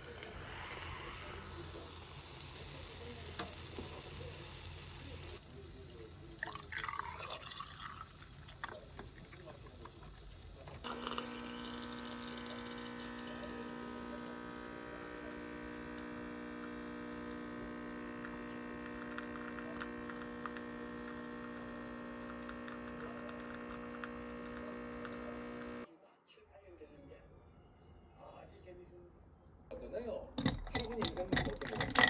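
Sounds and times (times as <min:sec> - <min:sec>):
electrical hum: 0:10.8 - 0:25.9.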